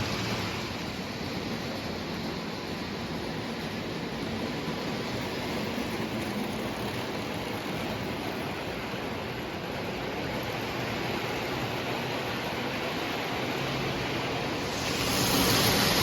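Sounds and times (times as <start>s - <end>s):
model train rumbling on track: 0.0s - 16.0s.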